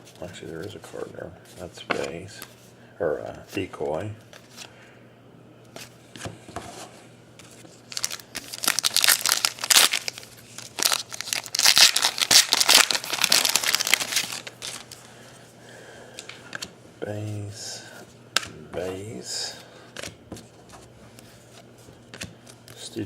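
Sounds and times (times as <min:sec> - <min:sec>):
wrapper tearing and crumpling: 0:07.9 - 0:15.0.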